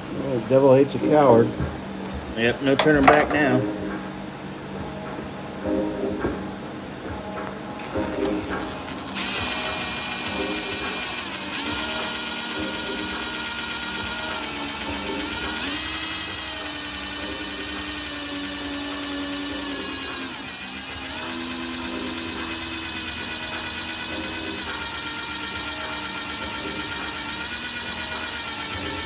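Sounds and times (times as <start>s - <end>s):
electric drill boring through metal: 7.8s - 29.0s.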